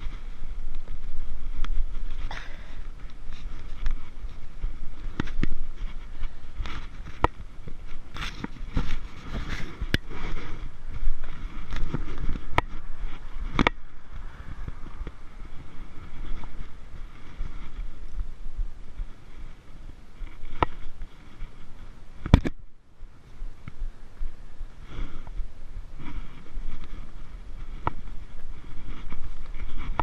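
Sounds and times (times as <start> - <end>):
wind rumble on microphone: 0.0 - 30.0.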